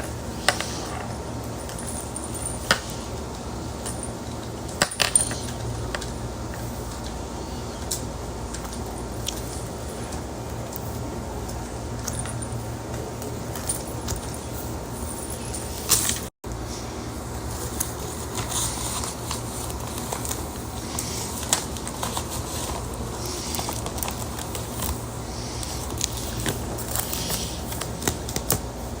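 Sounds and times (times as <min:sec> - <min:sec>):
objects clicking and rattling: 0:00.0 - 0:16.3
steady low hum: 0:00.0 - 0:29.0.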